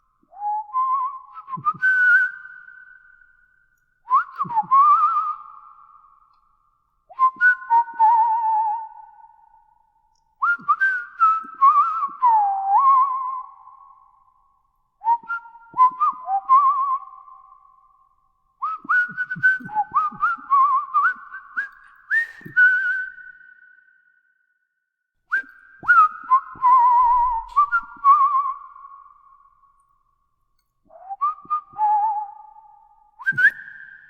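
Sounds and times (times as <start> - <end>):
high whistled trilling notes: 18.6 - 24.2, 25.3 - 29.5, 30.9 - 34.0.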